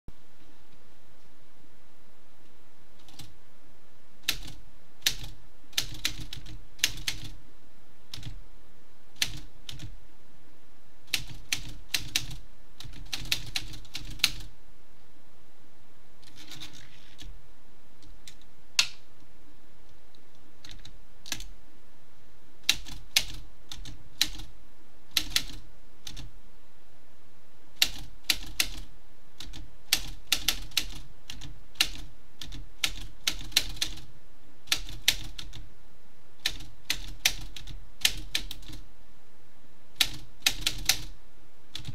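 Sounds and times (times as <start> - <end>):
typewriter keys clacking: 16.2 - 17.3, 40.0 - 41.1.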